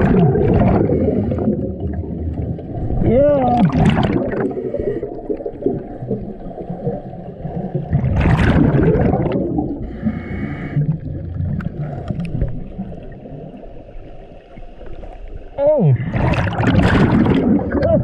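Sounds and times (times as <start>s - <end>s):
exhaled bubbles gushing: 0.0s - 13.7s, 15.6s - 18.0s
low water rumble: 0.0s - 18.0s
diver breathing through regulator: 0.7s - 1.6s, 4.4s - 5.4s, 9.7s - 11.1s.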